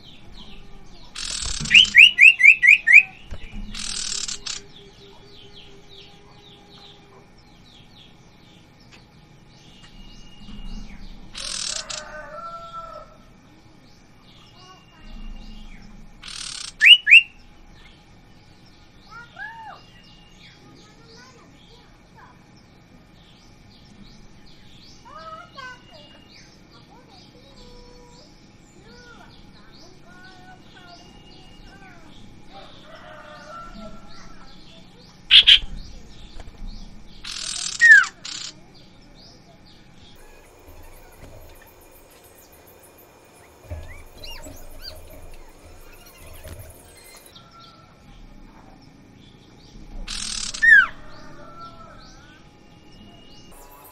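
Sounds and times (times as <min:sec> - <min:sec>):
faint chirping of other birds: 0:00.0 - 0:53.9
bird rasping hiss: 0:01.2 - 0:02.2, 0:02.9 - 0:04.7, 0:11.4 - 0:12.4, 0:16.2 - 0:16.9, 0:37.2 - 0:38.6, 0:40.2 - 0:47.4, 0:50.1 - 0:50.8
bird whistling sharp rising notes: 0:01.2 - 0:03.2, 0:16.2 - 0:17.4, 0:35.3 - 0:35.7, 0:40.2 - 0:47.4.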